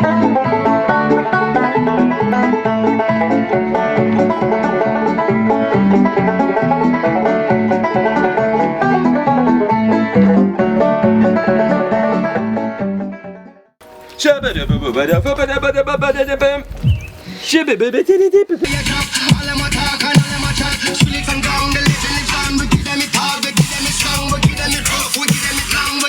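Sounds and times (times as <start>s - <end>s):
bluegrass music with banjo: 0.0s - 13.2s.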